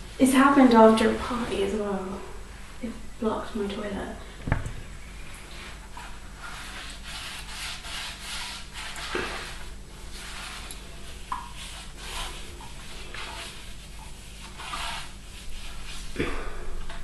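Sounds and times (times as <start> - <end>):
wet wipe rubbing toilet: 5.4 - 17.0.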